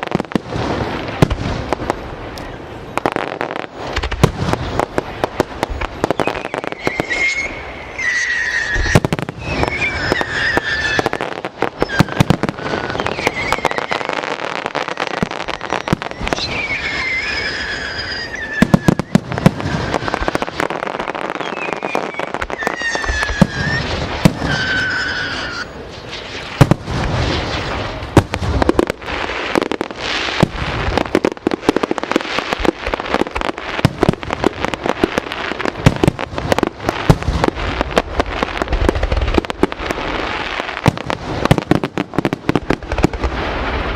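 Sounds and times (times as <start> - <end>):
fireworks bangs and crackle: 0.0 - 43.9.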